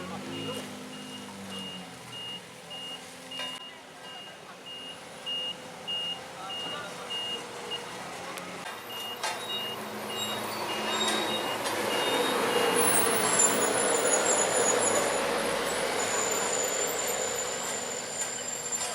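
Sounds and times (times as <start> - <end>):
heavy vehicle engine: 0.0 - 18.9
reversing alarm beeping: 0.2 - 7.9, 8.8 - 15.0.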